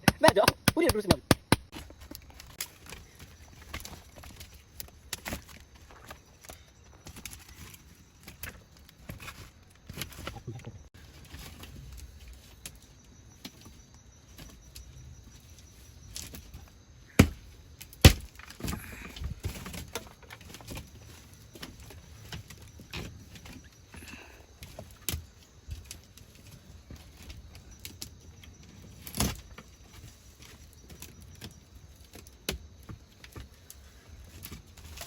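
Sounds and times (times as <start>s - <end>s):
sharp loud knocks: 0.0s - 1.7s.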